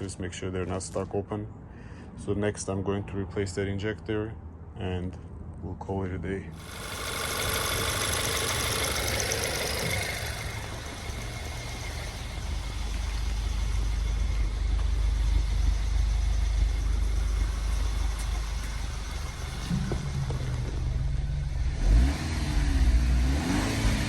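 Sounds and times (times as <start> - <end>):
car engine idling: 6.6 - 24.0.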